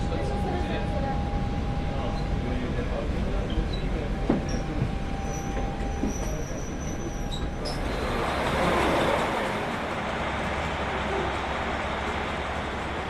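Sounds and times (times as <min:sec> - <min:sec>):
diesel railcar running on rails: 0:00.0 - 0:13.0
wheels squealing on rail: 0:03.4 - 0:09.7.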